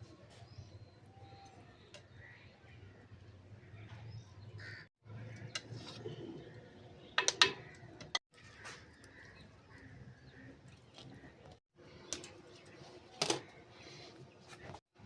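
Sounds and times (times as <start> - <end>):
birds calling: 3.6 - 14.8.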